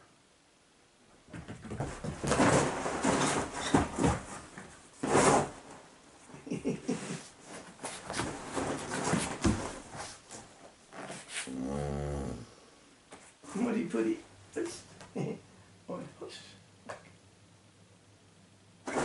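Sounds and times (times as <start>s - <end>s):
mat squeaking: 1.8s - 5.6s.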